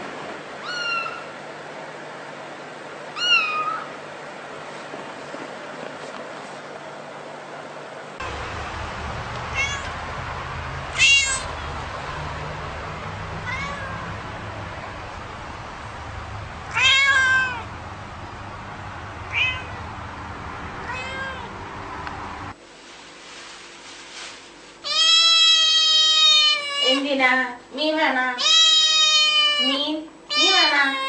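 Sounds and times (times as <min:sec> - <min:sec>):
low background hum: 0:00.0 - 0:31.0
cat meowing: 0:00.6 - 0:01.3, 0:03.2 - 0:03.9, 0:09.5 - 0:10.0, 0:10.9 - 0:11.6, 0:13.4 - 0:14.2, 0:16.7 - 0:17.7, 0:19.3 - 0:19.8, 0:20.8 - 0:21.5, 0:24.9 - 0:27.0, 0:28.4 - 0:31.0.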